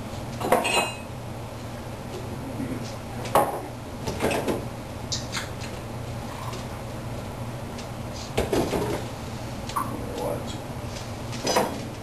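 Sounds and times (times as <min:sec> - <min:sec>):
steady low hum: 0:00.0 - 0:12.0
dishes and cupboard doors clattering: 0:00.4 - 0:01.1.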